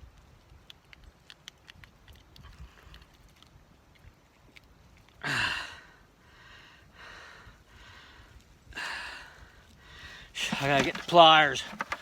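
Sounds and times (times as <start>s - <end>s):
man sighing heavily: 5.2s - 6.0s
soft breaths: 5.2s - 10.4s.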